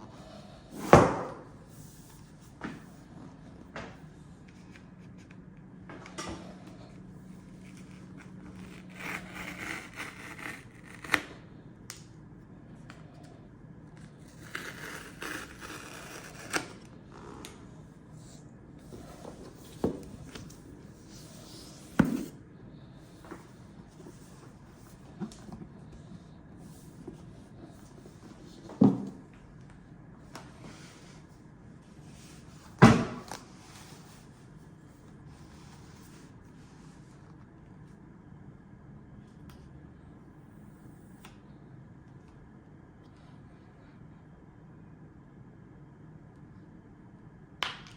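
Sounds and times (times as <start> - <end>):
cardboard rubbing and scraping: 7.5 - 11.2, 14.2 - 16.8.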